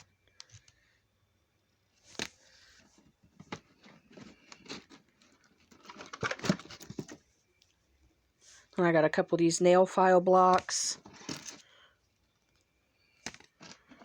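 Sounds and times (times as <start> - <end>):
packaging crinkling and clicking: 3.4 - 7.2.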